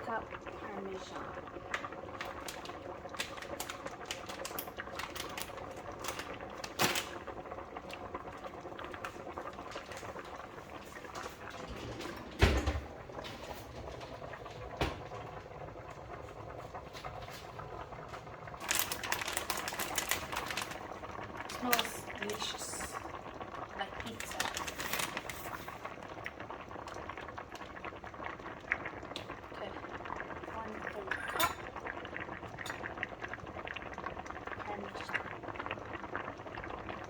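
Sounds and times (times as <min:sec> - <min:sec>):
kitchen utensils clicking and tapping: 0:31.1 - 0:31.7.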